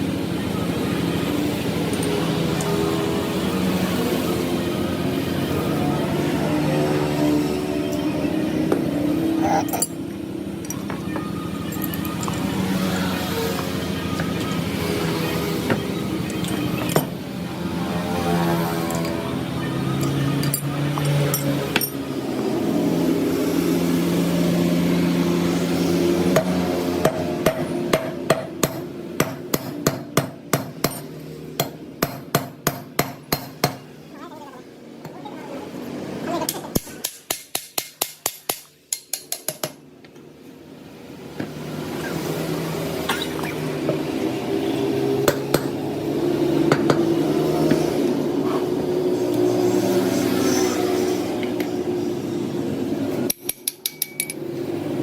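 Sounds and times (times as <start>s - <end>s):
hammer striking metal: 53.3s - 54.4s.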